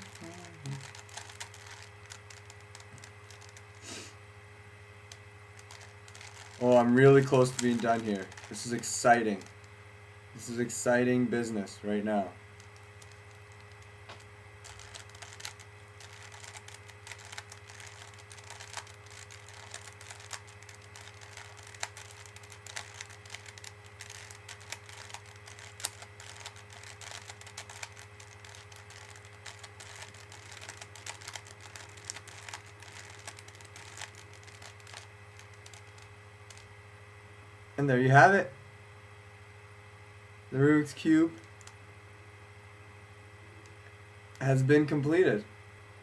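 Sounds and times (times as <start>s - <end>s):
puzzle cube plastic clicks: 0.0s - 3.8s, 5.1s - 9.7s, 12.6s - 36.7s
low mains hum: 0.0s - 46.0s.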